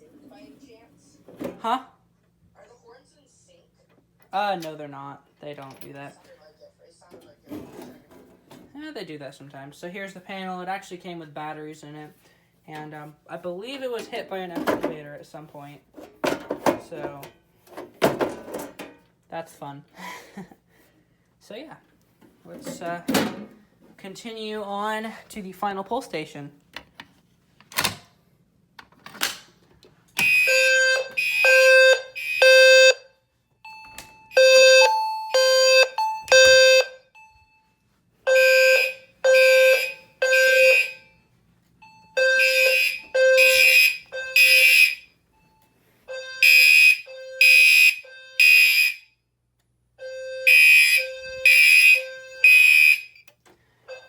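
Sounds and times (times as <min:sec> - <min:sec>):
low-frequency alarm tone: 0:30.2 - 0:49.1, 0:50.0 - 0:53.2
fire alarm horns: 0:30.2 - 0:49.3, 0:50.0 - 0:53.3.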